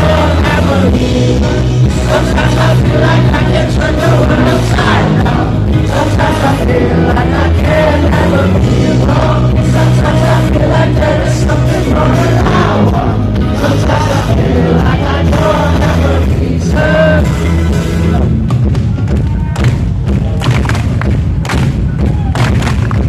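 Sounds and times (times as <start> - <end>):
person singing: 0.0 - 18.4
pop-rock band music: 0.0 - 23.0.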